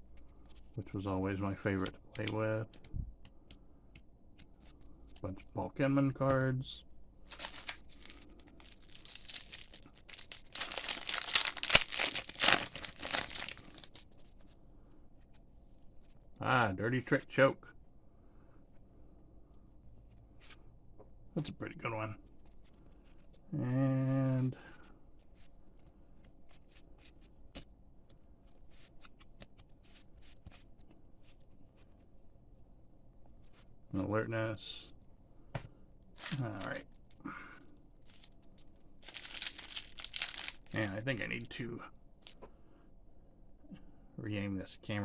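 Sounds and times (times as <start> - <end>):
foil wrapper crinkling and tearing: 7.3 - 14.1, 39.0 - 40.9.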